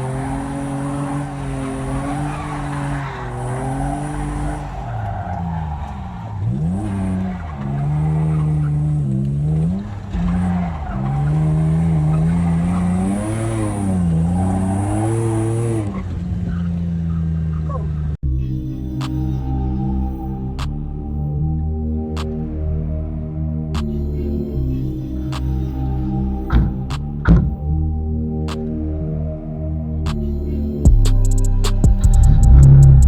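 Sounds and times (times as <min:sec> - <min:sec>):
car engine revving: 0:00.0 - 0:18.2, 0:30.0 - 0:33.0
tyres skidding: 0:00.0 - 0:18.2.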